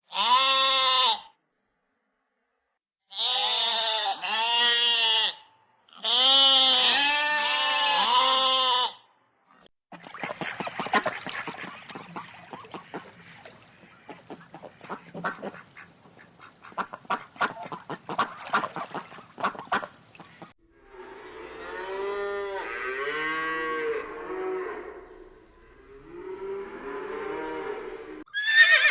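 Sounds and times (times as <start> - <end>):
waterfowl honking: 10.0 - 20.5.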